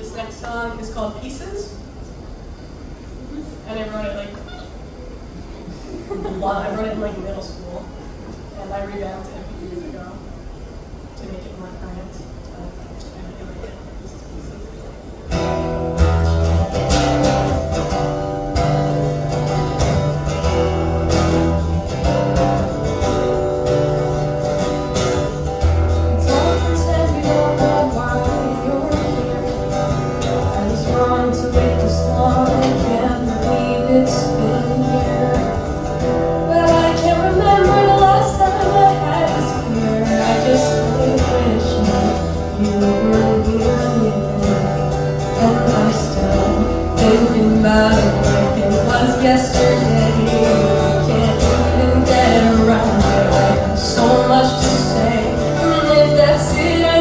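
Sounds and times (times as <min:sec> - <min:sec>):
guitar playing chord pattern: 0:15.3 - 0:57.0.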